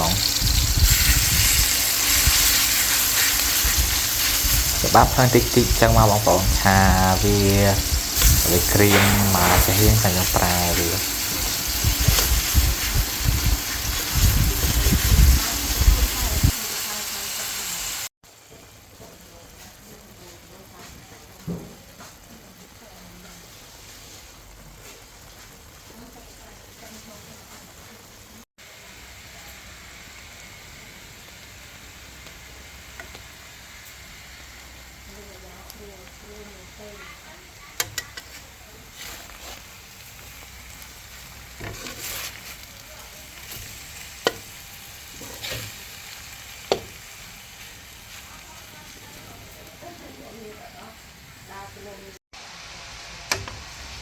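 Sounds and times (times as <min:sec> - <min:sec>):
food sizzling in hot oil: 0:00.0 - 0:54.0
spatula scraping a pan: 0:00.3 - 0:04.8, 0:37.8 - 0:39.8, 0:41.4 - 0:49.0
faint scrapes: 0:41.6 - 0:42.7
spatula knocking pan: 0:46.6 - 0:47.0.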